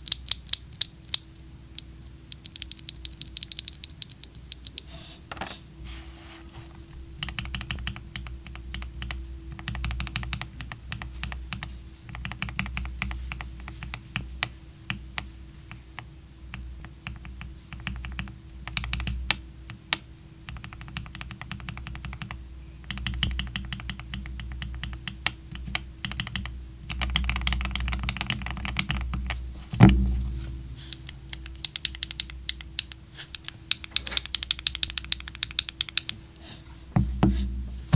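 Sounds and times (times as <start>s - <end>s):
mechanical keyboard key clacks: 0.0s - 1.2s, 1.8s - 4.8s, 30.9s - 36.2s
heavy thud: 29.8s - 31.4s.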